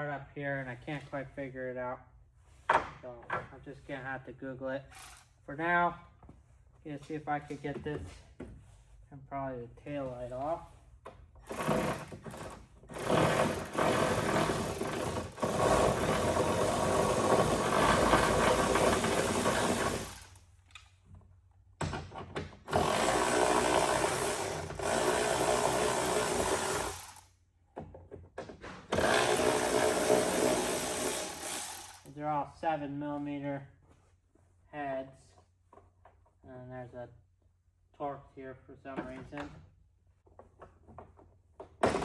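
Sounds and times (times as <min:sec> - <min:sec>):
power drill driving out screws: 0:04.9 - 0:05.3, 0:11.4 - 0:20.4, 0:22.7 - 0:27.3, 0:28.9 - 0:32.1.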